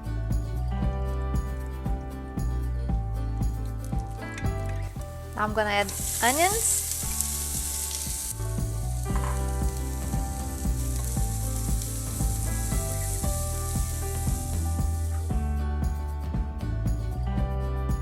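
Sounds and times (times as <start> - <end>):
background music with beat: 0.0 - 18.0
onions sizzling in fat: 3.8 - 15.3.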